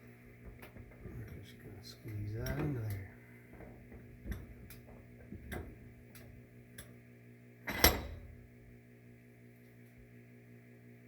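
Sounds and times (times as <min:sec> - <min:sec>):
sharp metal clank: 0:07.7 - 0:08.3.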